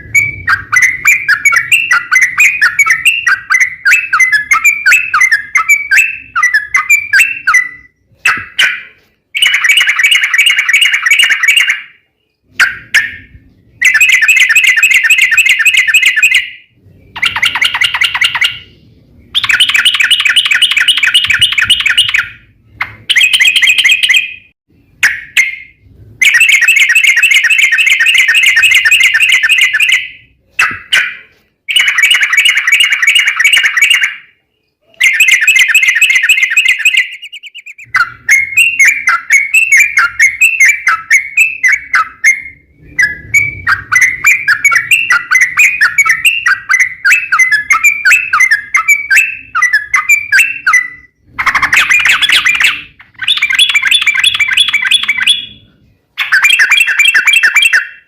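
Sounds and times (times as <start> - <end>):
bird singing rolling song: 0.0 - 58.0.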